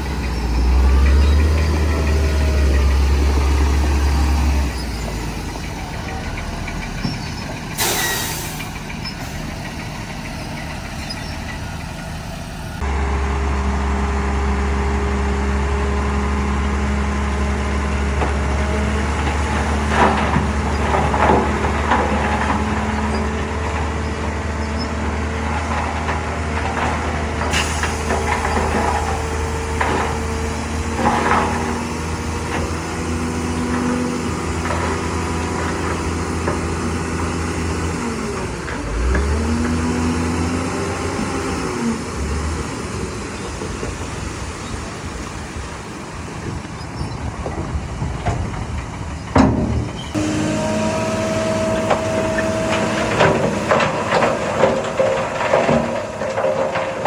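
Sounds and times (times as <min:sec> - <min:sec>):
heavy machinery diesel engines: 0:00.0 - 0:57.0
metallic clanks and knocks: 0:47.4 - 0:50.2, 0:51.5 - 0:57.0.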